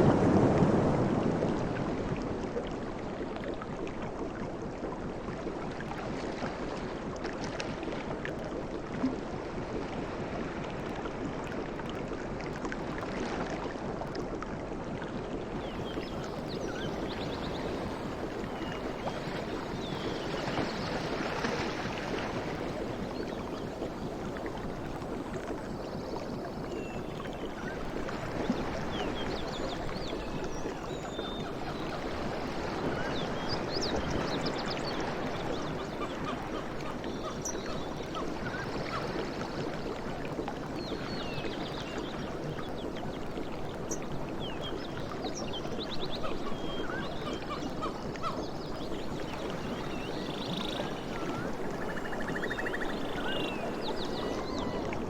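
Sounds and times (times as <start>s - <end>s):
sea waves washing: 47.5s - 55.0s.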